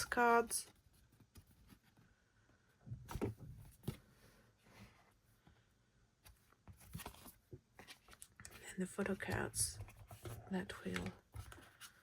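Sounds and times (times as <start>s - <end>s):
soft paper rustles: 6.2s - 12.0s.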